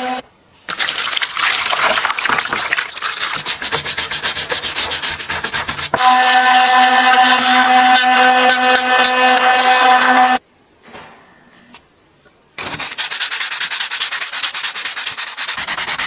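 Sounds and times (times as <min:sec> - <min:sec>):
abrasive rubbing strokes: 0:03.3 - 0:10.4.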